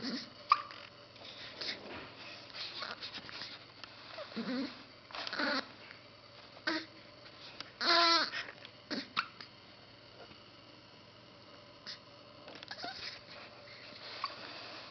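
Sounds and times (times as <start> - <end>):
baby whimpering: 4.2 - 5.7, 6.6 - 6.9, 7.8 - 9.2, 12.7 - 13.2
baby grunting: 4.4 - 5.7, 6.6 - 6.9, 7.8 - 9.2
baby hiccupping: 7.8 - 9.4.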